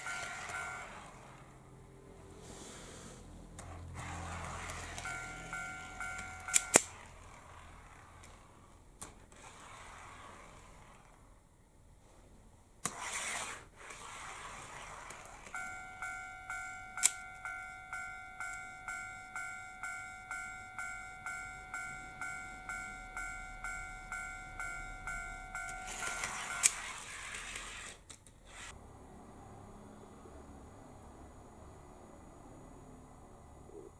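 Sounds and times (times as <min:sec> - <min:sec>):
level crossing bell ringing: 0:00.0 - 0:01.4, 0:04.7 - 0:07.0, 0:15.6 - 0:26.8
model train running on track: 0:00.0 - 0:01.5, 0:03.6 - 0:08.4, 0:14.0 - 0:27.9.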